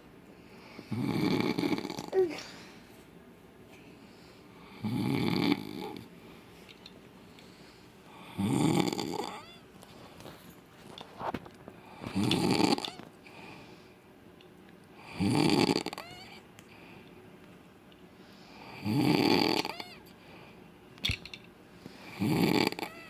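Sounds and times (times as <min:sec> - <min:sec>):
man snoring loudly: 0:00.9 - 0:02.1, 0:04.8 - 0:06.0, 0:08.3 - 0:09.4, 0:15.1 - 0:16.0, 0:18.8 - 0:19.7, 0:22.1 - 0:22.9.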